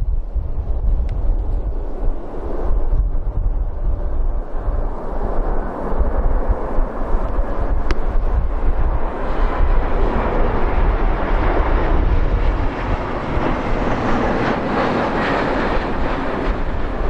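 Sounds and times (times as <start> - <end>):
wind buffeting microphone: 0.0 - 17.0
jet engines roaring: 0.1 - 17.0.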